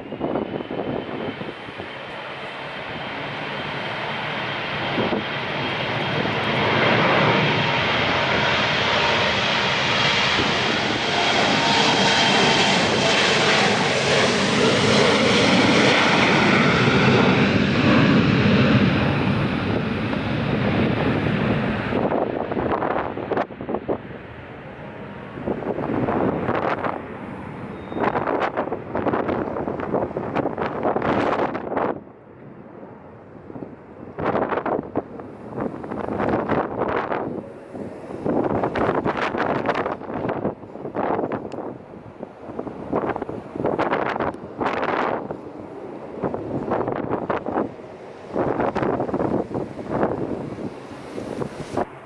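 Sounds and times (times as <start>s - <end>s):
airliner engines roaring: 0.0s - 52.0s.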